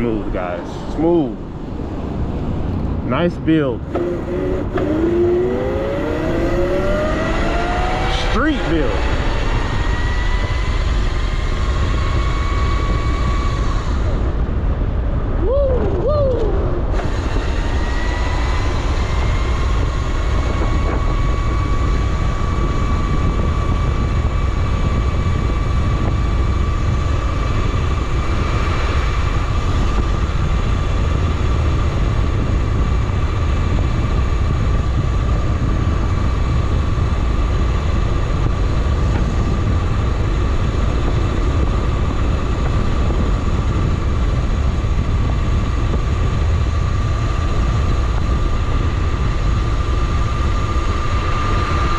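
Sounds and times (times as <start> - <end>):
wind buffeting microphone: 0.0 - 51.9
electric motor whine: 3.9 - 14.4, 16.9 - 30.8.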